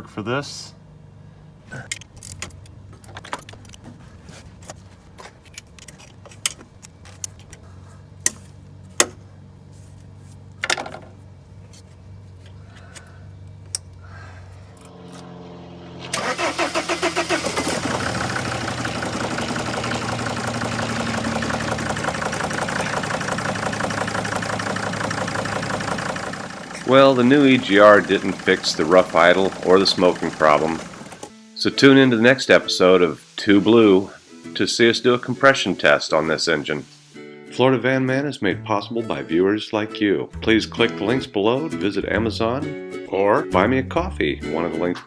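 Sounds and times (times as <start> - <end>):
diesel engine starting and idling: 12.6 - 31.4.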